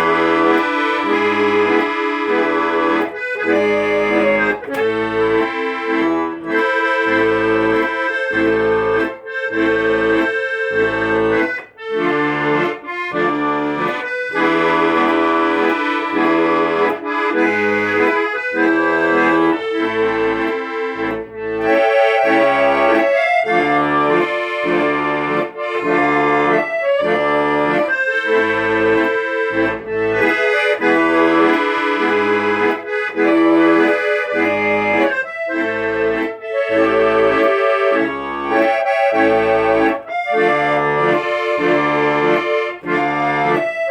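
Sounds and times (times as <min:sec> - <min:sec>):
accordion melody with bass accompaniment: 0:00.0 - 0:43.9.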